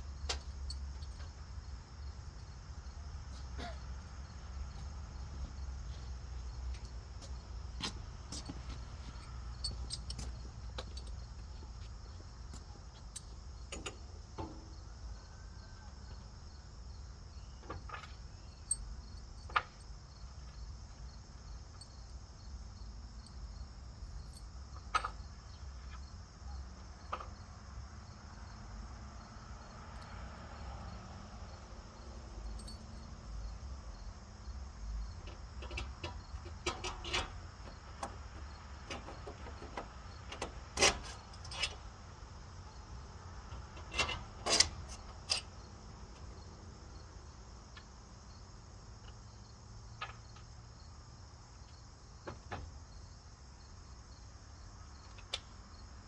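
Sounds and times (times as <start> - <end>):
sharp clicks and knocks: 7.8 - 14.8.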